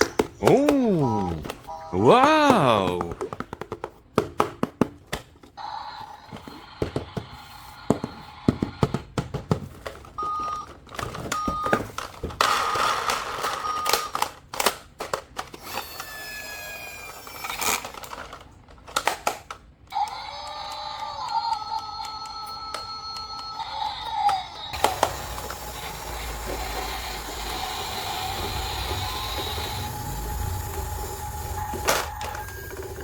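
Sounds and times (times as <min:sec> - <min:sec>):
toy electronic tones and beeps: 0:20.0 - 0:33.0.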